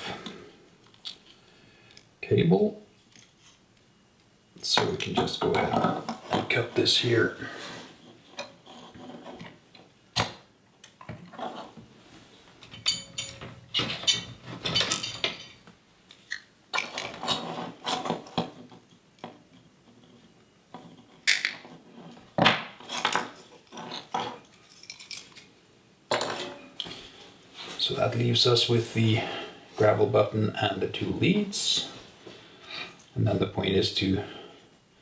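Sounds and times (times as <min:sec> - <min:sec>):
small tools clinking and rattling: 0:12.6 - 0:15.7, 0:22.8 - 0:25.5.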